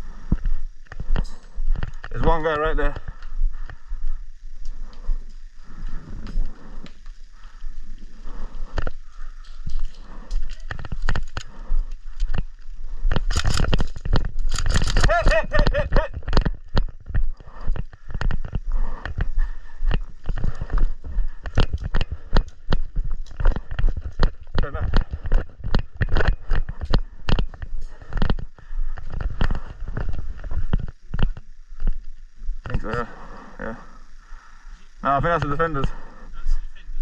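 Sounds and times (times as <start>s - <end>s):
running footsteps: 0.0s - 33.1s
gear clattering: 8.6s - 31.4s
person calling out: 15.0s - 16.2s.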